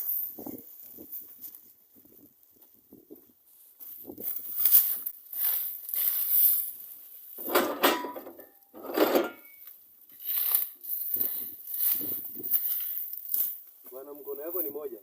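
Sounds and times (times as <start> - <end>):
metal tools clanking: 7.4 - 9.6.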